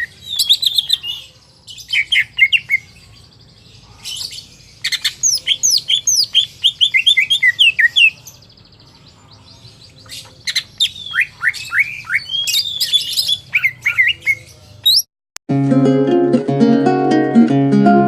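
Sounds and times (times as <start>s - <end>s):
bird singing whistled notes: 0.0s - 3.0s, 4.4s - 8.5s, 9.8s - 15.1s.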